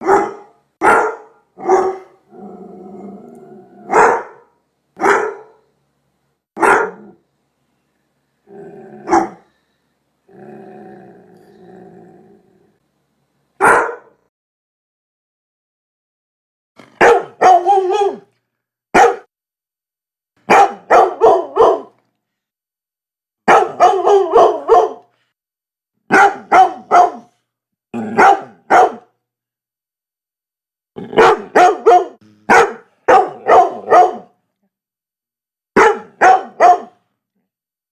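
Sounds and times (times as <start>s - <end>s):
dog barking: 0.0s - 2.2s, 3.9s - 5.7s, 6.6s - 7.2s, 9.0s - 9.5s, 13.6s - 14.3s, 17.0s - 18.3s, 18.9s - 19.3s, 20.4s - 22.0s, 23.5s - 25.1s, 26.1s - 27.4s, 28.0s - 29.1s, 31.1s - 34.4s, 35.8s - 37.0s.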